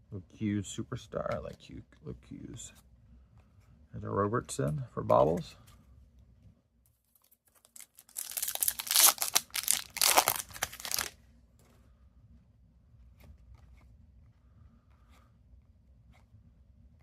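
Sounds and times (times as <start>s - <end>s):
wrapper tearing and crinkling: 7.1s - 11.2s.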